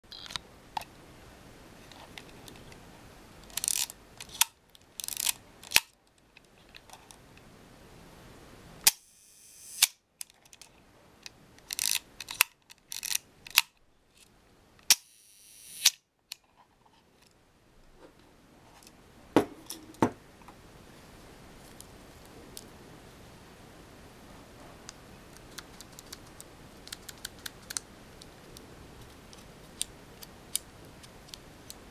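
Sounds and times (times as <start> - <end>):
camera advance lever ratcheting: 3.5 - 5.8, 11.7 - 13.7.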